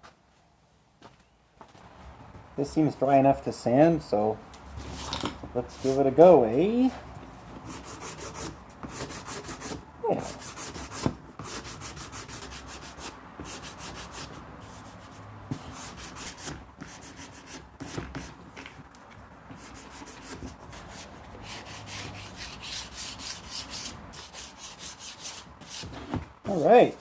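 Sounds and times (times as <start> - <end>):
sandpaper rubbing on metal panel: 7.6 - 18.4, 19.6 - 25.9.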